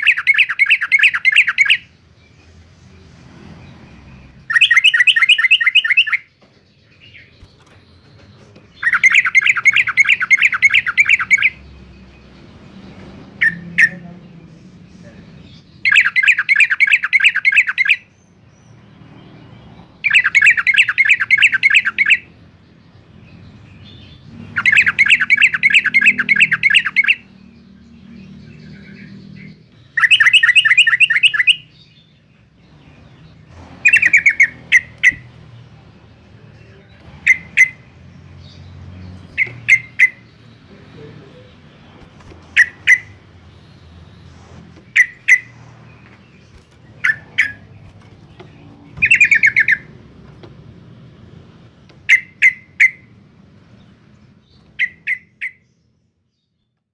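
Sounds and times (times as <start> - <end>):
bird chattering song: 0.0 - 2.6, 3.9 - 56.9
sharp bird call notes: 4.5 - 6.3, 28.9 - 31.7, 49.0 - 49.9.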